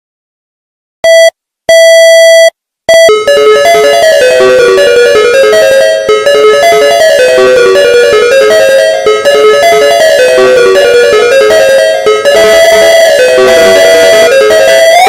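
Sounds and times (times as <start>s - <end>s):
electronic alarm beeps: 1.1s - 15.0s
fast synthesized keyboard melody: 3.0s - 15.0s.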